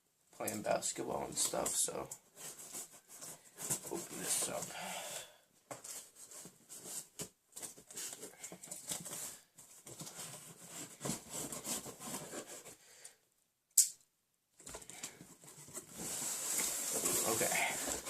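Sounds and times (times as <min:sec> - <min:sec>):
sharp click: 0:13.8 - 0:14.1
packaging rustling and tearing: 0:15.7 - 0:18.0.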